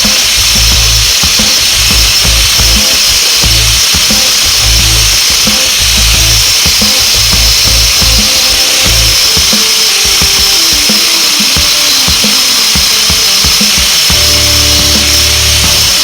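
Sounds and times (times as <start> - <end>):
music with pulsing bass: 0.0 - 9.5, 11.6 - 16.0
high-pitched power tool running: 0.0 - 16.0.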